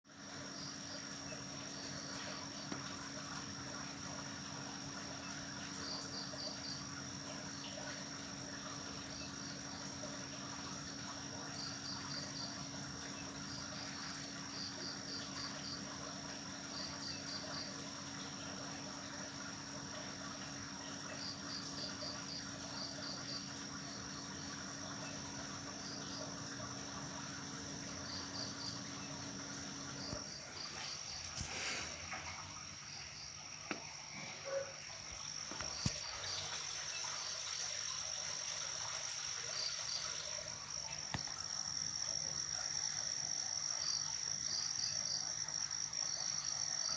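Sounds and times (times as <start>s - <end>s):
crickets shrill drone: 0.1s - 46.9s
insect chirps: 0.1s - 46.9s
low steady hum: 0.2s - 37.5s.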